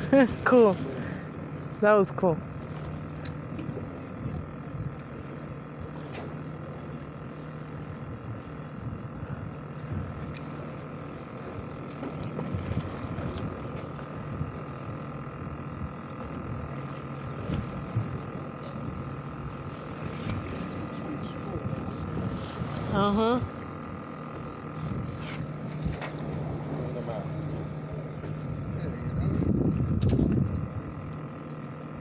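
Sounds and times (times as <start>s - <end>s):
boat engine drone: 0.0s - 32.0s
water noise: 0.0s - 32.0s
wind: 0.0s - 32.0s.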